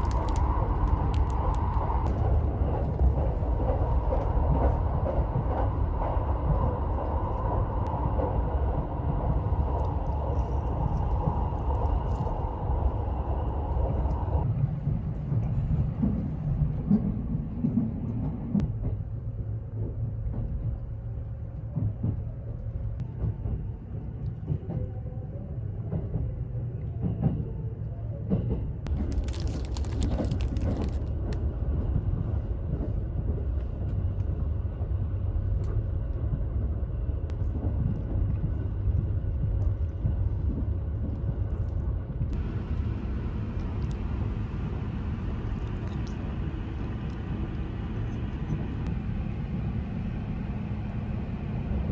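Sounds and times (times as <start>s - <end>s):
train wheels rumbling on rails: 0.0s - 51.9s.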